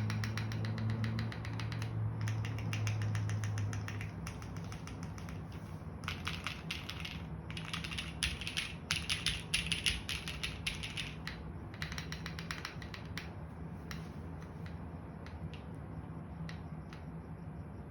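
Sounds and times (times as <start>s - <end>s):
typing on mechanical keyboard: 0.0s - 13.3s.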